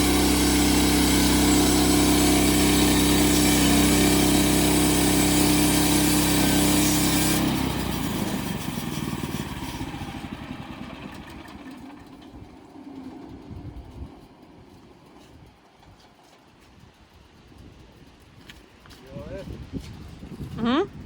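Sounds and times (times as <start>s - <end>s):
gas engine running and winding down: 0.0s - 16.0s.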